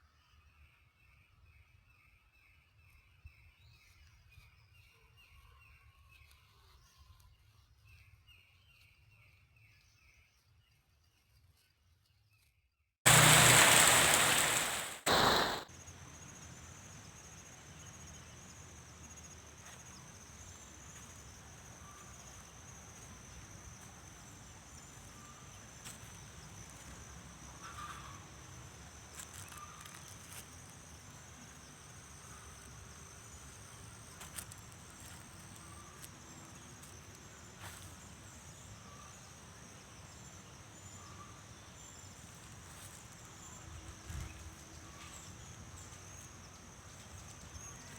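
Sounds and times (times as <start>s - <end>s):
insects trilling: 13.1s - 15.6s
loud rush of noise: 13.1s - 15.7s
faint outdoor background noise: 13.1s - 47.9s.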